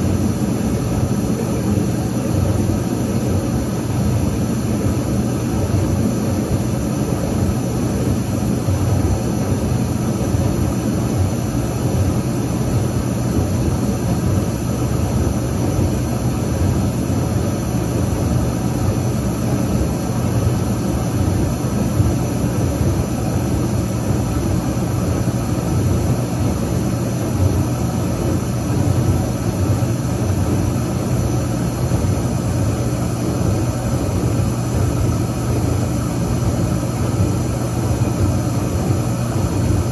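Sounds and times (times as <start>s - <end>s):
dishwasher motor hum: 0.0s - 39.9s.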